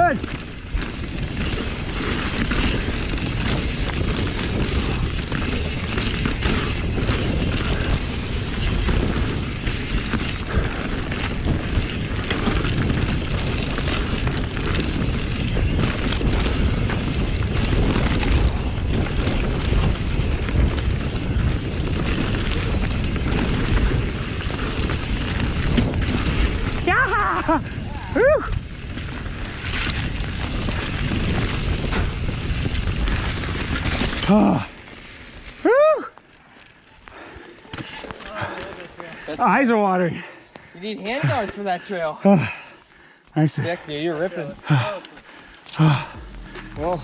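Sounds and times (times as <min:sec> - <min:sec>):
wind buffeting microphone: 0:00.0 - 0:34.7, 0:45.8 - 0:47.0
bike rattling and knocking: 0:00.0 - 0:35.6, 0:44.6 - 0:47.0
bike tyre rumble: 0:00.0 - 0:41.6, 0:42.3 - 0:47.0.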